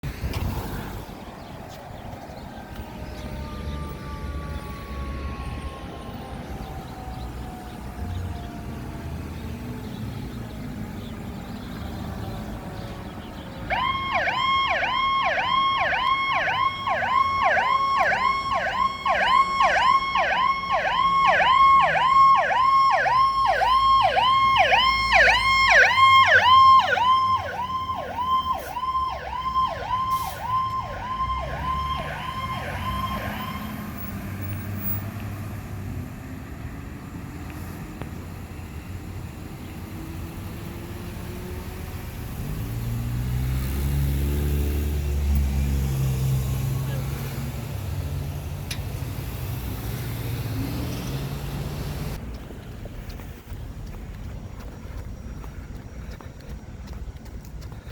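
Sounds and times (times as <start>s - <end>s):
truck engine and road rumble: 0.0s - 57.9s
fire engine siren yelping: 1.7s - 10.4s, 11.8s - 35.0s, 45.1s - 48.3s.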